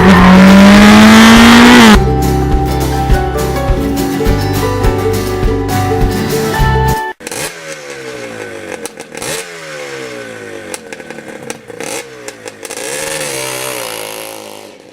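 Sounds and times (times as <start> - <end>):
guitar music: 0.0 - 7.2
motorcycle engine running: 7.2 - 14.9.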